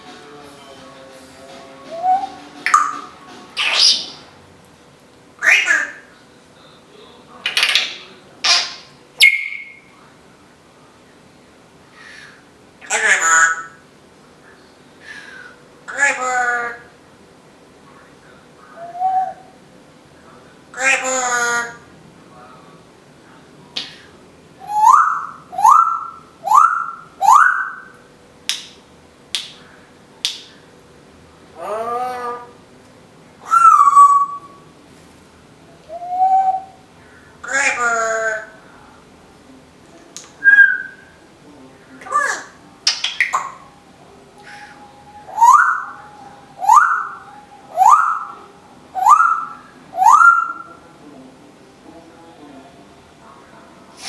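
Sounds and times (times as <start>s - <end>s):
parrot whistling: 1.9s - 4.2s, 7.5s - 9.9s, 18.7s - 19.6s, 24.6s - 28.0s, 33.4s - 34.7s, 35.9s - 36.8s, 40.4s - 41.2s, 42.1s - 50.8s.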